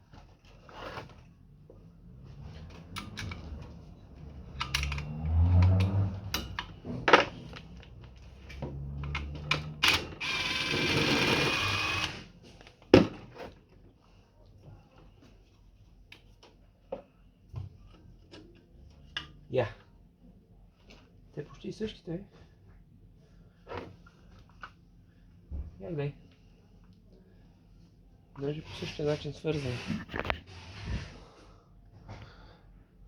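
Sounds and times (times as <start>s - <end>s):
metal tools clicking and knocking: 4.6s - 6.8s.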